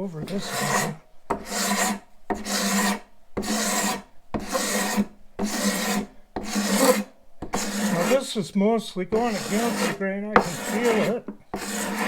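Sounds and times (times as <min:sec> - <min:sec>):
hand scraper rasping on wood: 0:00.0 - 0:08.4, 0:09.1 - 0:12.0.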